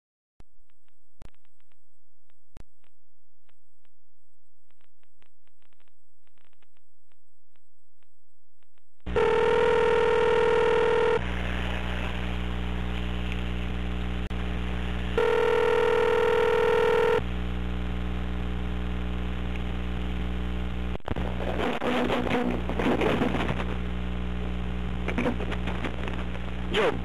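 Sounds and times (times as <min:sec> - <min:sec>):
telephone ringback tone: 0:09.1 - 0:11.2, 0:15.2 - 0:17.2
steady line hum: 0:10.9 - 0:15.7, 0:17.1 - 0:27.0.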